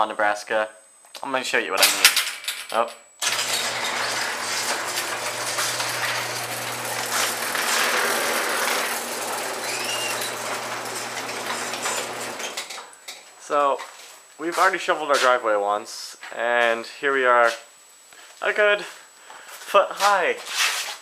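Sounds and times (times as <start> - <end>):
garage door rattling: 1.8 - 12.8
garage door motor hum: 3.2 - 12.8.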